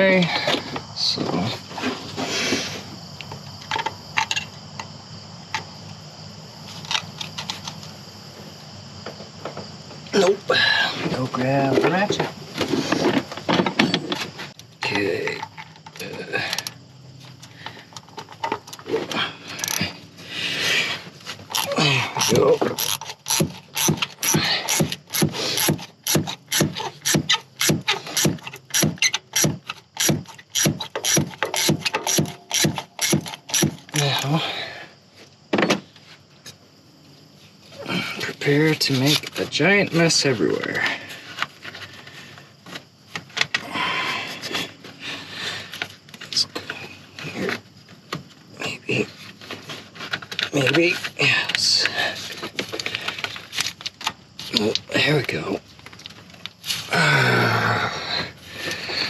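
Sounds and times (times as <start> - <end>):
hand tools clicking and clinking: 21.4 - 34.3.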